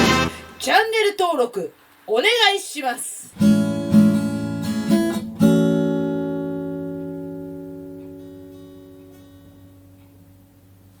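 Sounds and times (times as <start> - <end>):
strummed guitar chord ringing: 0.0 - 0.7, 3.4 - 10.8.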